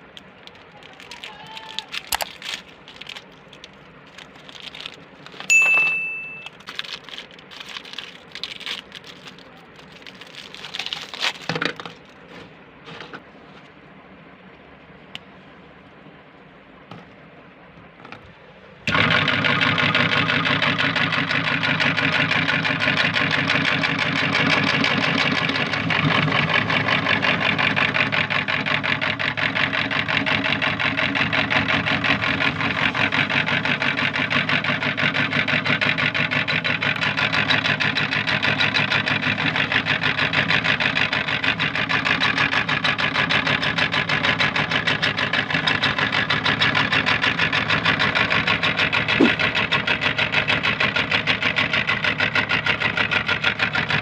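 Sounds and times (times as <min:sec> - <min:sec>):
meat grinder motor humming: 0:18.9 - 0:54.0.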